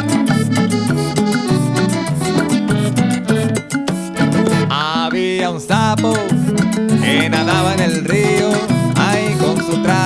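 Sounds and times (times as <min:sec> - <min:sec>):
bass line: 0:00.0 - 0:04.8, 0:05.8 - 0:10.0
percussion beat: 0:00.0 - 0:10.0
person singing: 0:04.5 - 0:10.0.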